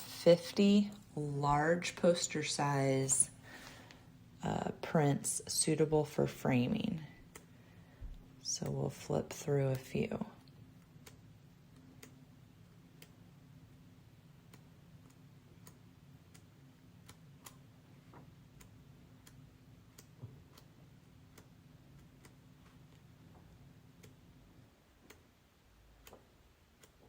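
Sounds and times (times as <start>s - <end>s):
low steady hum: 0.0s - 27.0s.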